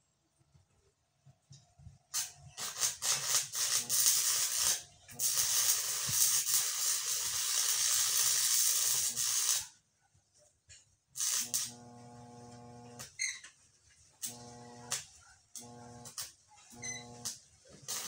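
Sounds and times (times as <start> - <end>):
arc welding hiss: 2.1 - 9.7, 11.2 - 13.2, 14.2 - 18.0.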